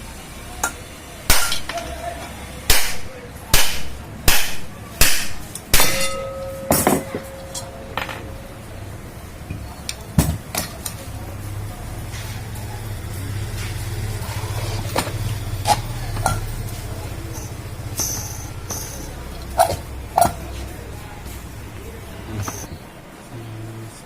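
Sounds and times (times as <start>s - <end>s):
metallic ring: 5.8s - 8.4s, 17.3s - 19.2s.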